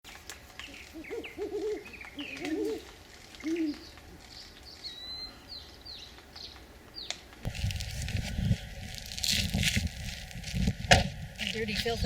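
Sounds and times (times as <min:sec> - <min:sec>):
songbirds chirping faintly: 0:00.5 - 0:07.5
owl hooting: 0:00.7 - 0:04.0.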